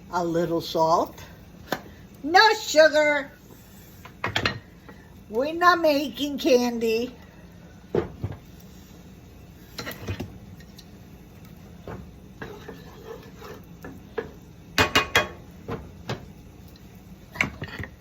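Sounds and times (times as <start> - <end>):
utensils clinking against a pot: 9.7 - 10.9, 12.4 - 15.5, 16.1 - 18.0.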